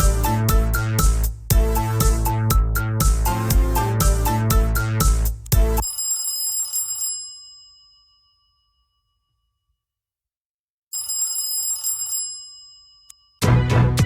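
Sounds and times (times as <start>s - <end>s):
telephone bell ringtone: 5.8s - 9.5s, 10.9s - 13.4s.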